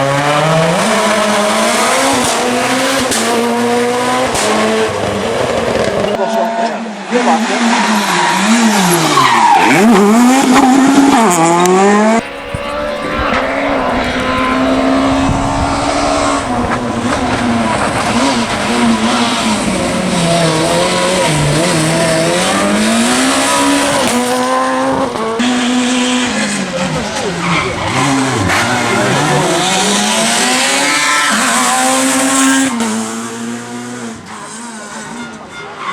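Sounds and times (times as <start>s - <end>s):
rally car engines revving: 0.0s - 35.9s
tyre noise: 12.2s - 24.6s.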